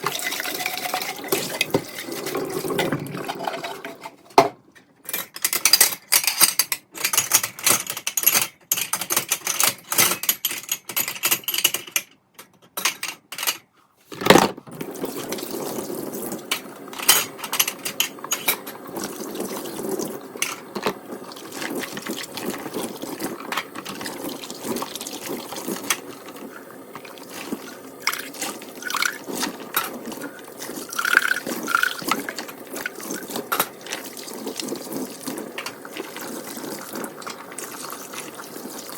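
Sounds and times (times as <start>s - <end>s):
kitchen tap running into sink: 0.0s - 4.5s, 14.7s - 38.9s
dishes and utensils clattering: 0.0s - 13.7s, 16.4s - 38.5s.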